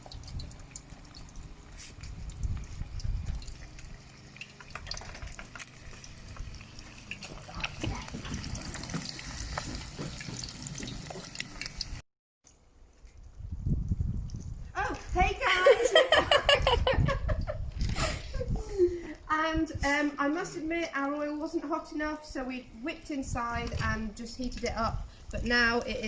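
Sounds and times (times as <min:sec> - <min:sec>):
fish frying in hot oil: 0:00.0 - 0:12.0.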